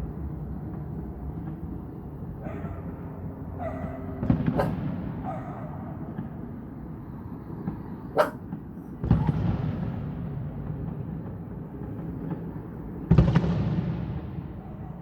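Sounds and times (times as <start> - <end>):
fireworks booming: 4.2 - 5.2, 8.5 - 14.6.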